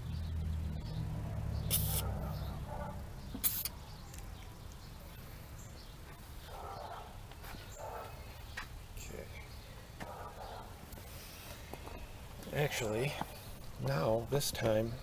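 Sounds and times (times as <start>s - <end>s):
low vehicle hum: 0.0s - 6.2s
spray can hissing: 1.7s - 2.0s, 3.4s - 3.7s.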